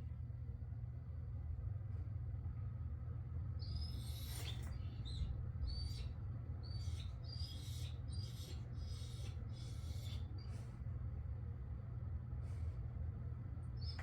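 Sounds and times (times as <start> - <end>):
low hum: 0.0 - 14.0
dog whining: 3.6 - 10.5.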